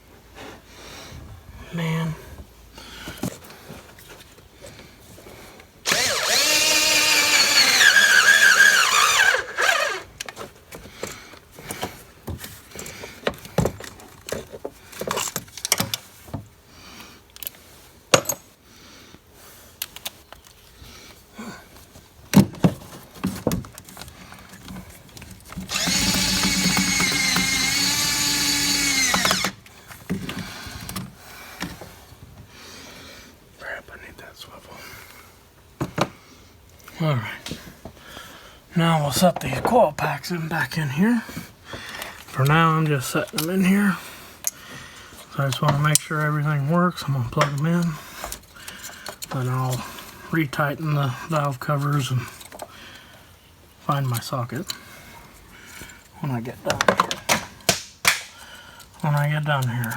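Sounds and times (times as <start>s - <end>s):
power driver motor whine: 5.9s - 10.1s, 25.7s - 29.6s.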